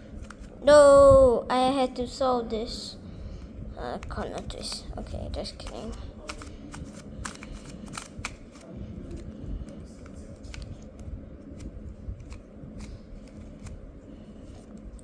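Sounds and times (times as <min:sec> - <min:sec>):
plastic puzzle clicking: 0:04.0 - 0:09.3.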